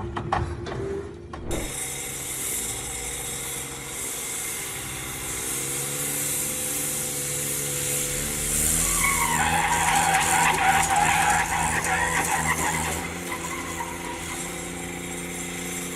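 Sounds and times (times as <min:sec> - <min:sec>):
wheels skidding and spinning: 0:04.9 - 0:15.9.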